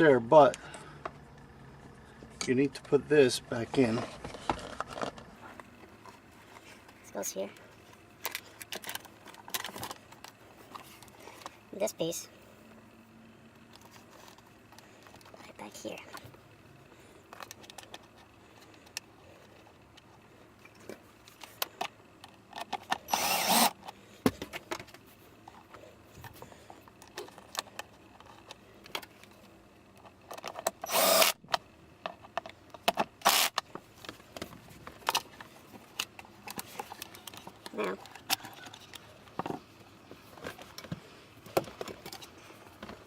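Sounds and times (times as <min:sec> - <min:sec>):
plastic parts clicking and tapping: 0:08.2 - 0:11.5, 0:17.3 - 0:43.0.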